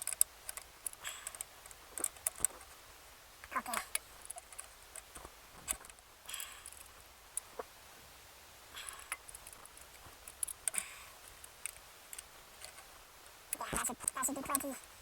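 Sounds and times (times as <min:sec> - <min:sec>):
clicks of engine parts and tools: 0:00.0 - 0:02.7, 0:03.7 - 0:06.9, 0:08.8 - 0:12.9.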